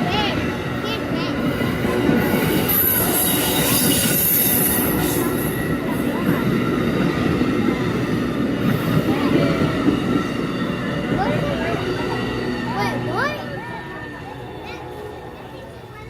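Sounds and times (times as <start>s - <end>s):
rumble of wheels on rail: 0.0s - 16.0s
train wheels squealing: 2.2s - 6.1s.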